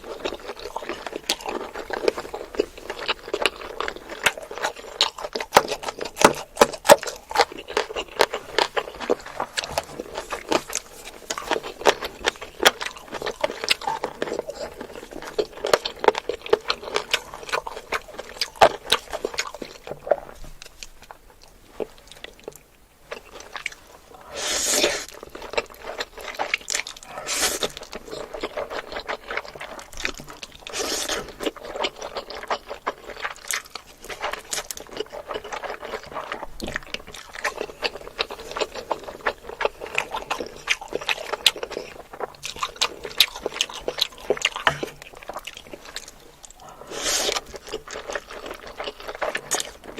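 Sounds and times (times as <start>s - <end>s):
person chewing and crunching food: 0.0s - 49.9s.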